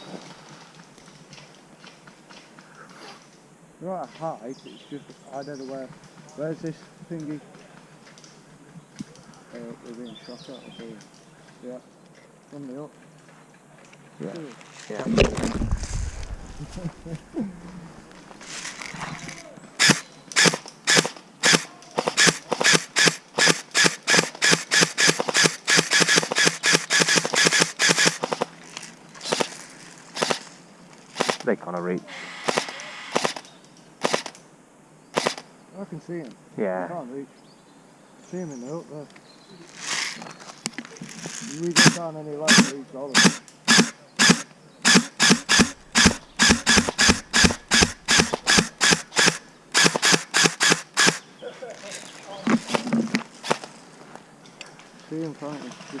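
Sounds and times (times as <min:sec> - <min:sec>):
footsteps crunching on dry ground: 0:14.4 - 0:19.4
airsoft gun shots: 0:19.8 - 0:28.5, 0:32.4 - 0:33.4, 0:34.0 - 0:34.3, 0:35.2 - 0:35.4, 0:41.8 - 0:51.2.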